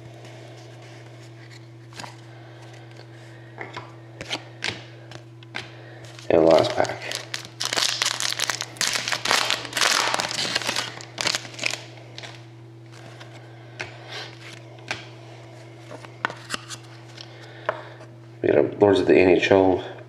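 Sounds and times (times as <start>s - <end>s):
cards clicking and rustling: 4.2s - 15.1s
foil pack tearing and crinkling: 6.1s - 13.2s.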